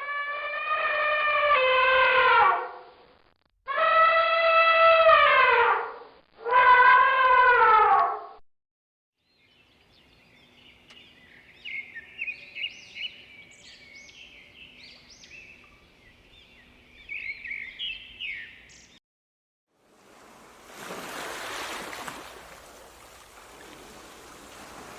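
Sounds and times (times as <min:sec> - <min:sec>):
songbird chirping and trilling: 0:09.2 - 0:19.0.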